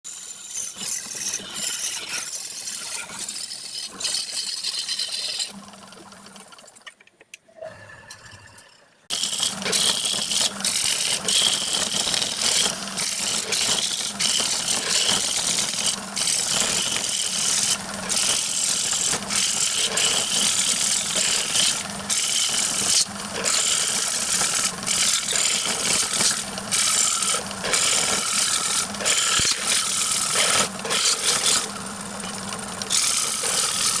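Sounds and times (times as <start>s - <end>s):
turning tool cutting wood: 0.1s - 5.6s, 9.1s - 34.0s
lathe motor hum: 9.1s - 34.0s.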